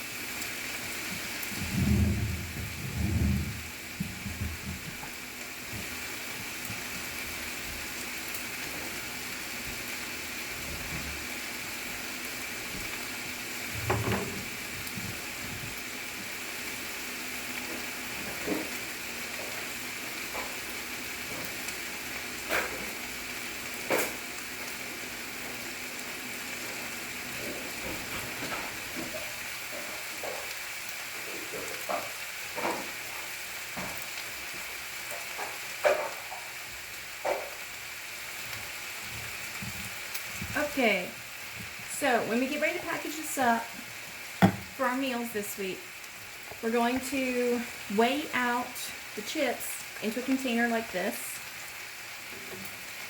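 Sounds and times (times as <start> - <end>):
meat sizzling in a frying pan: 0.0 - 53.0
utensil knocking against pan: 44.4 - 44.8.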